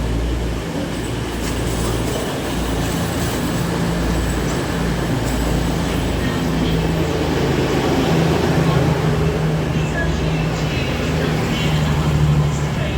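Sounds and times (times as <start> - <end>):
diesel engines droning: 0.0 - 12.9
train running noise: 0.0 - 12.9.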